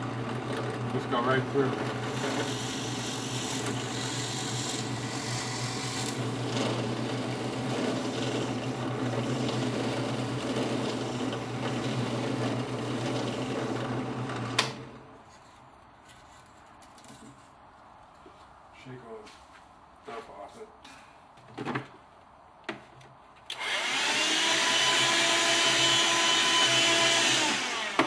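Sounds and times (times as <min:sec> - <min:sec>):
drill press motor humming: 0:00.0 - 0:15.0, 0:23.6 - 0:28.0.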